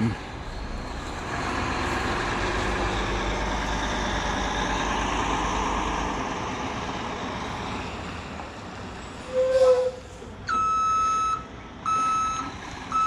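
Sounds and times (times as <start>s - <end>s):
heavy diesel engine running: 0.0s - 9.4s.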